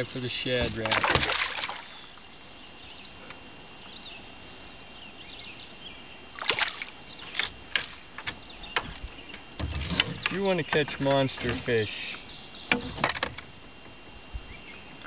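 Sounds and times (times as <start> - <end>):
water splashing against canoe: 0.3 - 2.0, 6.4 - 8.4, 9.6 - 13.5.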